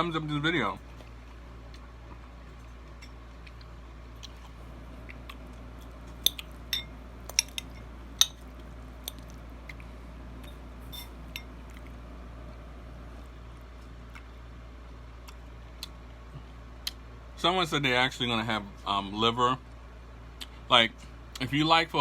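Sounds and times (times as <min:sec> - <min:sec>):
steady low hum: 0:00.0 - 0:22.0
faint chewing: 0:00.8 - 0:12.2, 0:13.0 - 0:14.5, 0:15.1 - 0:17.0.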